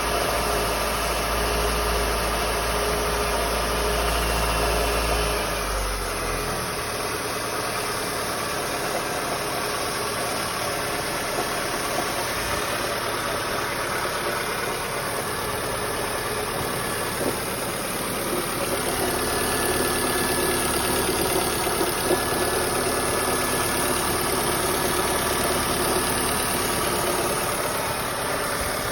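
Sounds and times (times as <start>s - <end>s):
car engine running with knock: 6.8s - 28.9s.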